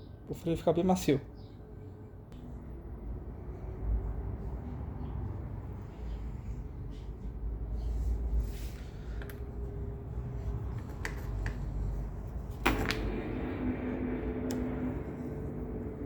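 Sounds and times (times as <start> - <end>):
steady low hum: 1.2 - 16.0.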